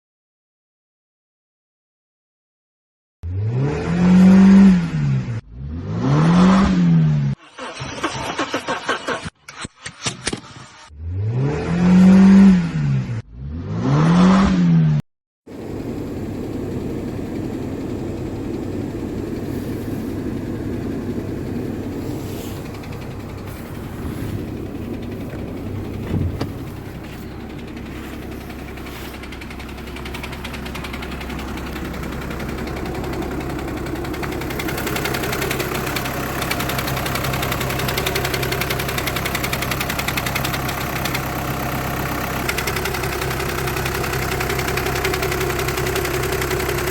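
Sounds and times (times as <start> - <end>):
car engine revving: 3.3 - 9.2, 10.9 - 14.8, 15.6 - 46.9
car engine idling with knocking: 15.5 - 46.9.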